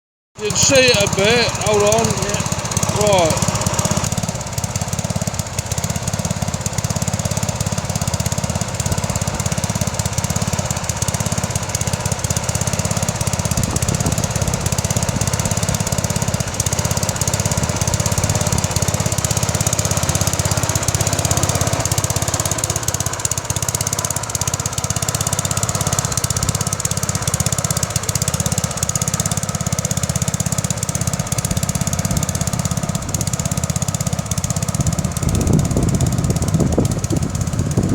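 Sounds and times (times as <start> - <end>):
garden tractor engine running: 0.4 - 37.9.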